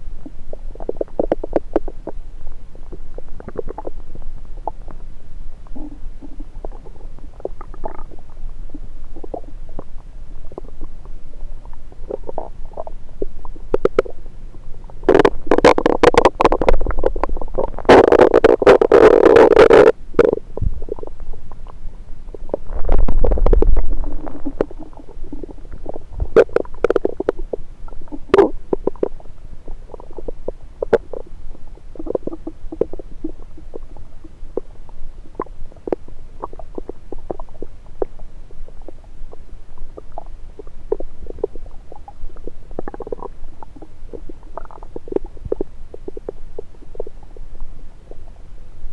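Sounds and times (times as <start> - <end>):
stomach gurgles: 0.0 - 48.9
small pops and crackles: 15.0 - 21.8, 22.5 - 27.5
deep low rumble: 22.4 - 26.4.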